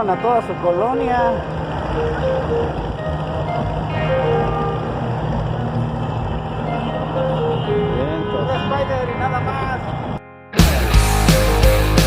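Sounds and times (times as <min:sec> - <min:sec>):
rock band playing: 0:10.5 - 0:12.0.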